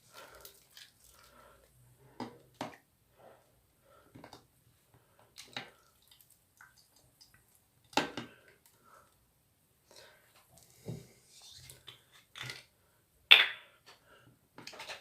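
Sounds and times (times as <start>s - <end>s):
soapy water squishing and dripping: 0.0s - 1.8s, 5.0s - 8.9s.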